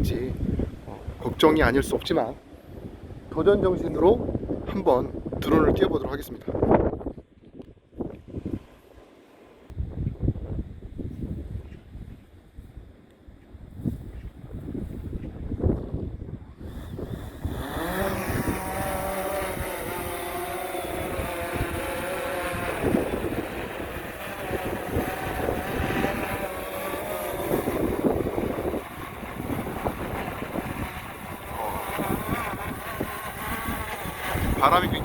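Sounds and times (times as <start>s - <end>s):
wind buffeting microphone: 0.0s - 8.7s, 9.7s - 35.0s
drone propellers whining: 16.4s - 35.0s.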